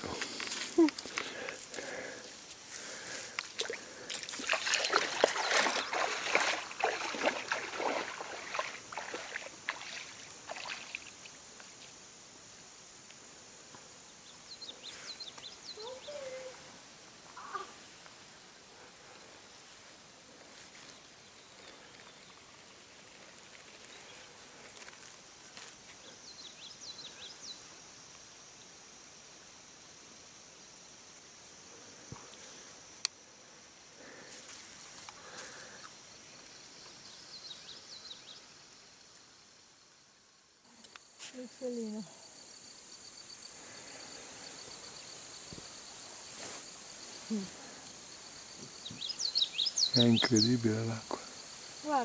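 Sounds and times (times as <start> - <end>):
songbird chirping: 0.0 - 12.0, 13.1 - 29.0, 34.0 - 52.0
high-pitched hiss: 0.0 - 52.0
high-pitched insect trill: 0.1 - 52.0.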